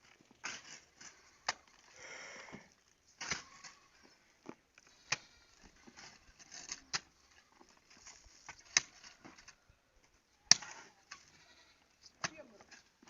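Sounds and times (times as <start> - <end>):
light scraping and rustling: 0.0 - 13.0.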